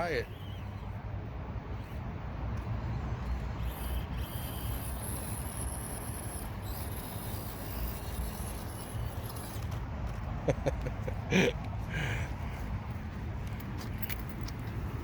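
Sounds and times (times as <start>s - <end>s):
toy car motor whining: 2.8s - 9.8s.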